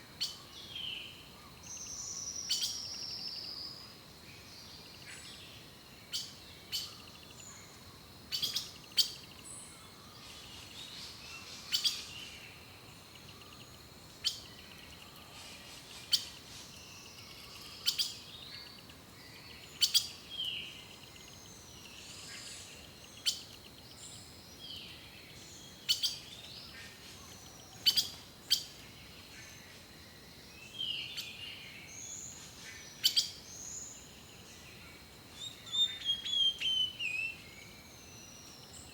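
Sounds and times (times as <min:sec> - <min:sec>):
birds chirping and whistling: 0:35.4 - 0:38.9.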